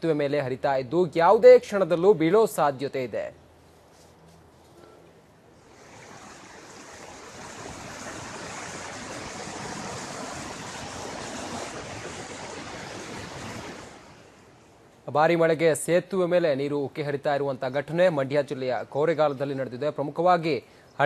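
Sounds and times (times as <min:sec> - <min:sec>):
floodwater rushing: 0:05.6 - 0:14.6.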